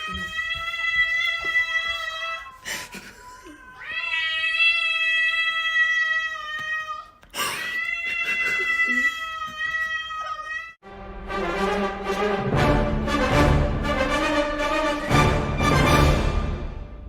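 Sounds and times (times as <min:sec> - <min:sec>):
cat yowling: 0:03.2 - 0:10.8.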